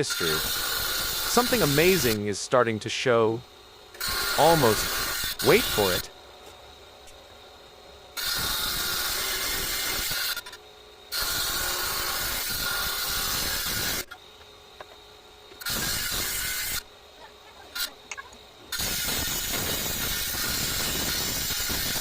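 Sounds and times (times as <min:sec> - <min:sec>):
power saw grinding rock: 0:00.0 - 0:02.4, 0:04.0 - 0:06.1, 0:08.2 - 0:14.1.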